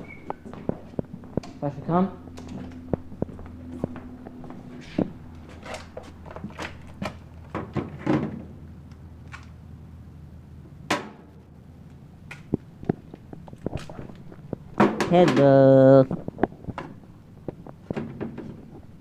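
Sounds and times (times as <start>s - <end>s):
steady low hum: 0.0s - 19.0s
objects knocking and clattering: 12.9s - 15.6s, 16.2s - 18.9s.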